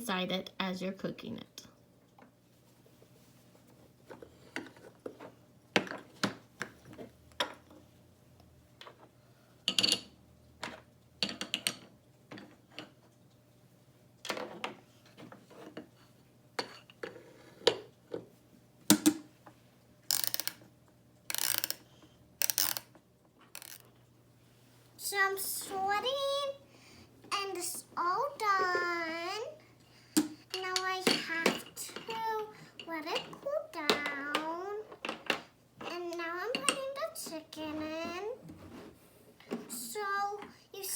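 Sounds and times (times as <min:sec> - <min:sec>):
wooden toy rattling: 0:20.1 - 0:20.6, 0:21.3 - 0:21.8, 0:22.4 - 0:22.9, 0:23.6 - 0:23.9
wooden toys clicking and knocking: 0:20.1 - 0:20.6, 0:21.3 - 0:21.8, 0:22.4 - 0:24.0.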